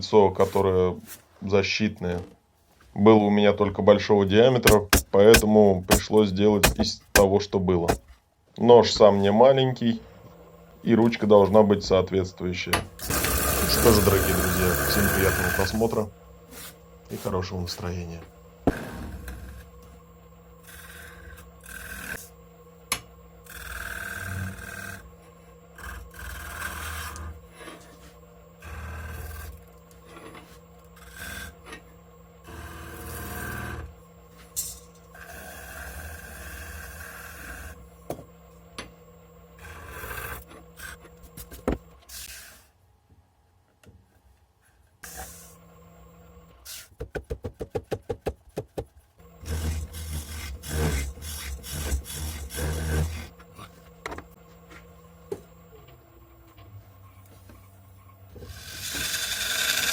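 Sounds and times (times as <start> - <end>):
filing and rubbing strokes: 13.1 - 17.4, 20.6 - 22.4, 23.5 - 31.7, 48.5 - 54.0, 58.4 - 59.9.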